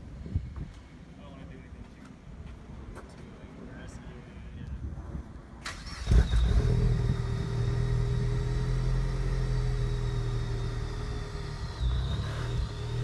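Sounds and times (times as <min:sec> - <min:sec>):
car engine starting and idling: 0:05.6 - 0:13.0.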